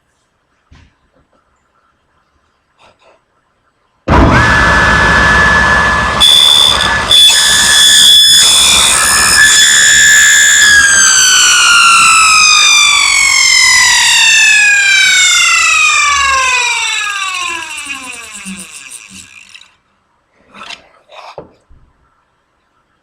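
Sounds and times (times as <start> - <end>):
table saw whining: 4.1 - 19.8.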